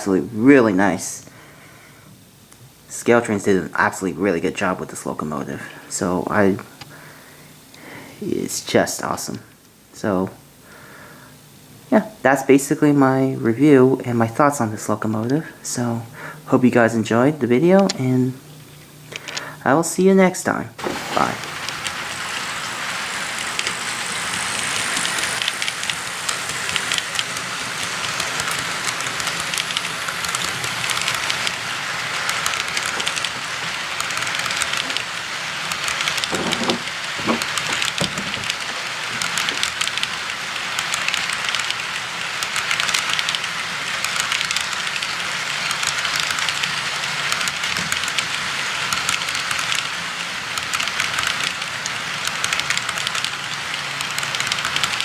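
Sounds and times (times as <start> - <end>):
model train wheels rattling on track: 20.8 - 55.0.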